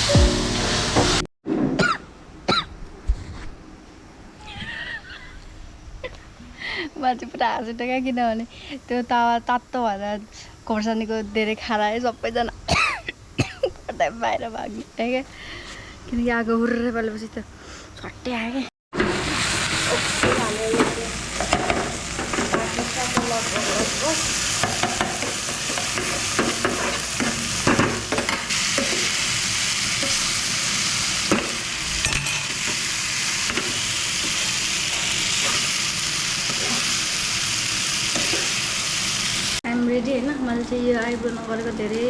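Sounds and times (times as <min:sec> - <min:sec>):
food sizzling in hot oil: 0:19.0 - 0:42.0
spatula scraping a pan: 0:20.2 - 0:29.3, 0:36.4 - 0:37.0.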